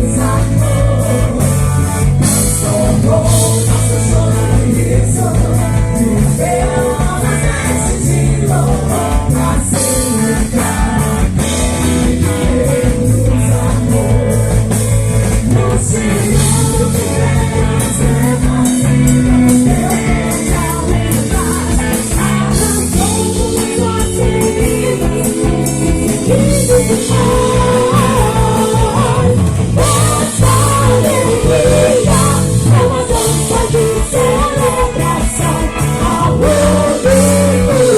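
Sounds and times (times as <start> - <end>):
bass: 0.0 - 37.9
drums with rock beat: 0.0 - 37.9
electric guitar: 0.0 - 37.9
person singing: 15.4 - 37.9.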